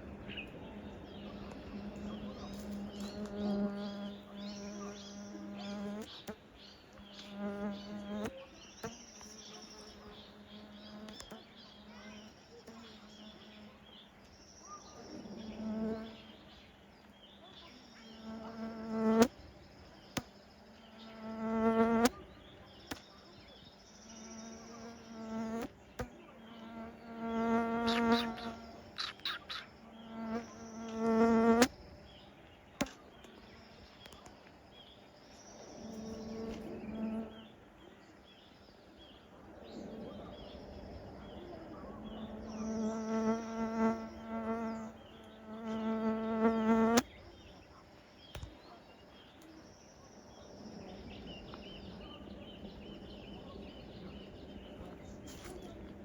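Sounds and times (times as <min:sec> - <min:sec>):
faint high chirping: 0:00.0 - 0:56.0
insect buzzing: 0:00.6 - 0:14.0, 0:14.6 - 0:16.6, 0:17.7 - 0:23.1, 0:23.8 - 0:34.3, 0:35.3 - 0:37.5, 0:41.1 - 0:47.2.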